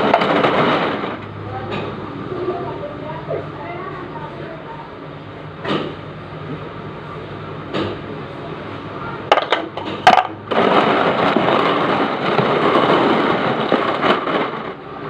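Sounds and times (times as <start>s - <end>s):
loud steady rushing noise: 0.0s - 15.0s
dishes and utensils clattering: 9.3s - 10.4s.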